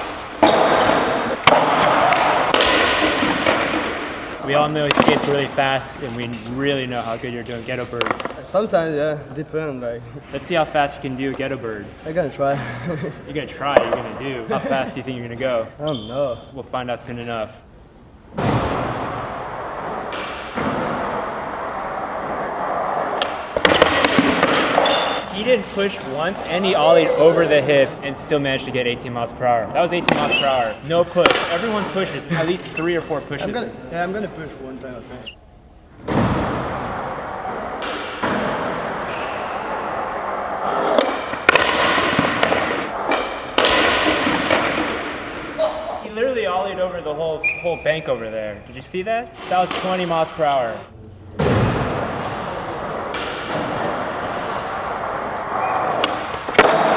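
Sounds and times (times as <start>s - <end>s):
skateboard heavy landing impact: 0.0s - 5.4s, 18.3s - 24.9s, 36.0s - 45.6s, 51.4s - 56.9s
skateboard sharp crack: 0.0s - 5.4s, 18.4s - 25.9s, 36.0s - 45.6s, 51.4s - 56.9s
skateboard wheels rolling on concrete: 0.0s - 8.8s, 18.3s - 33.1s, 34.6s - 46.0s, 49.4s - 56.9s
skateboard thud on ground: 23.2s - 24.8s, 40.8s - 45.5s, 56.0s - 56.9s.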